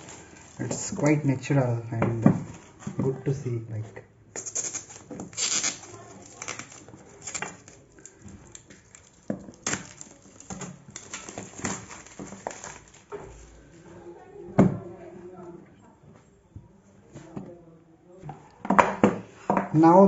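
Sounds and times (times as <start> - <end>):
cardboard box being torn open: 4.4 - 13.1.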